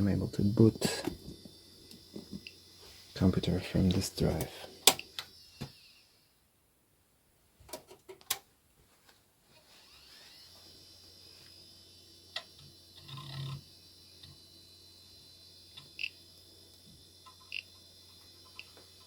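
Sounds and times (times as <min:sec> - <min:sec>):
hard drive spinning up whine: 0:00.0 - 0:06.4, 0:09.6 - 0:19.0.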